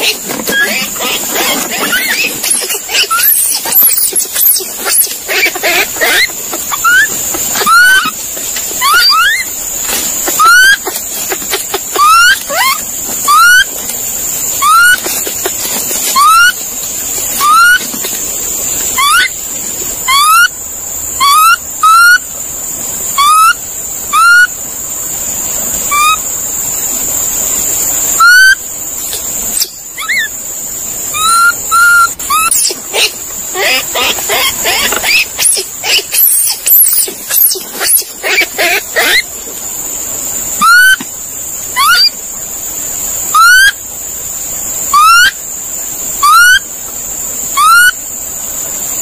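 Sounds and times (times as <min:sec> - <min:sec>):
monkey whooping calls: 0:00.0 - 0:13.7, 0:14.6 - 0:16.6, 0:17.4 - 0:18.0, 0:18.9 - 0:19.4, 0:20.0 - 0:20.5, 0:21.2 - 0:22.2, 0:23.1 - 0:24.6, 0:25.9 - 0:26.3, 0:28.2 - 0:28.6, 0:29.6 - 0:30.4, 0:31.1 - 0:39.4, 0:40.6 - 0:41.0, 0:41.7 - 0:42.2, 0:43.3 - 0:43.8, 0:44.9 - 0:45.4, 0:46.2 - 0:46.7, 0:47.6 - 0:48.0
steady high-pitched whine: 0:00.0 - 0:49.0.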